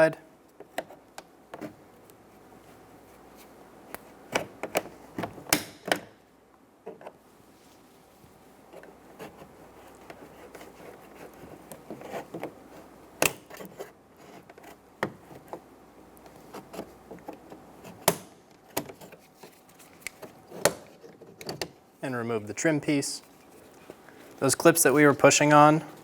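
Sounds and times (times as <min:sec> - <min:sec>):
plastic rubbing and scraping: 0:08.7 - 0:15.6.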